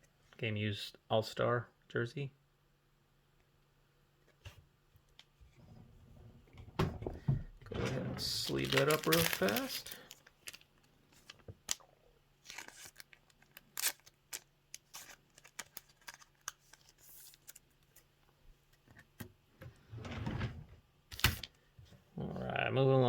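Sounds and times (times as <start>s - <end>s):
plastic sleeve rustling: 8.2s - 18.1s.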